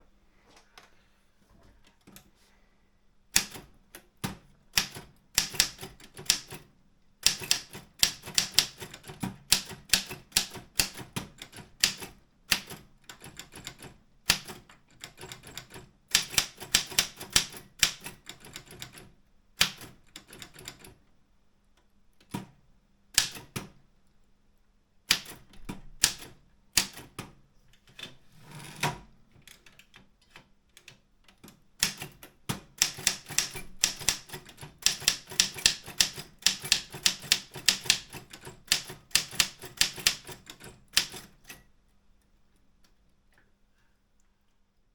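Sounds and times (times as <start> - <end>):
typewriter key strikes: 3.4 - 6.6, 7.2 - 19.0, 23.2 - 23.7, 25.1 - 27.3, 31.8 - 41.6.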